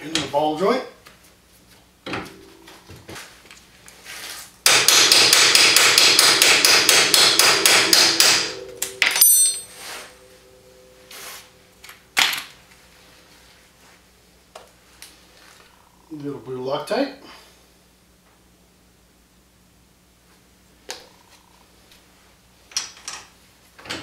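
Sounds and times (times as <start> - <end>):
rapid hammer strikes on metal: 4.6 - 9.8.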